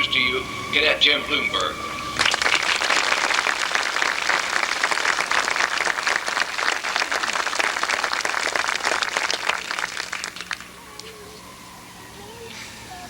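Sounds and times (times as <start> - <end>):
audience applauding: 1.6 - 10.8.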